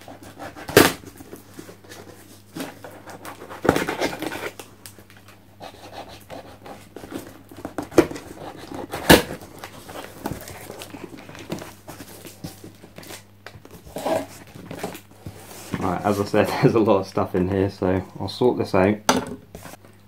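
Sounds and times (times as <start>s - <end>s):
low steady hum: 0.0s - 20.0s
packing material rustling: 6.7s - 16.5s.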